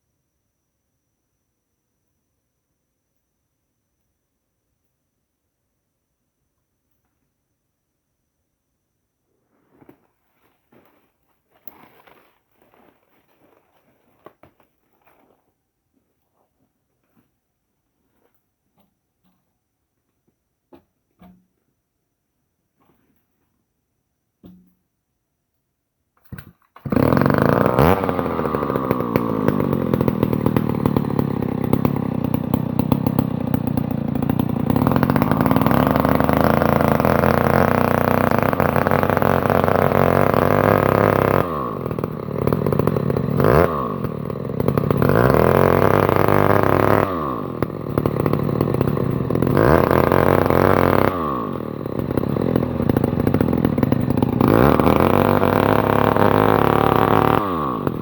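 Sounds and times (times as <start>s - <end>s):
chainsaw revving: 10.4s - 11.0s, 11.6s - 15.4s, 26.2s - 58.0s.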